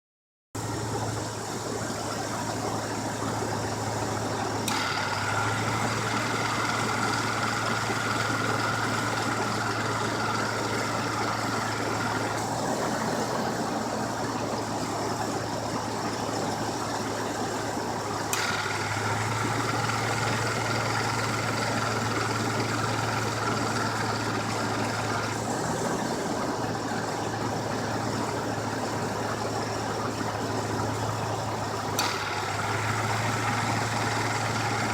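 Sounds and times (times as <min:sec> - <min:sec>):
car engine idling: 0:00.6 - 0:34.9
compressor whine: 0:00.6 - 0:34.9
compressor clutch clicking: 0:04.4 - 0:13.7, 0:18.2 - 0:26.6, 0:30.7 - 0:34.9.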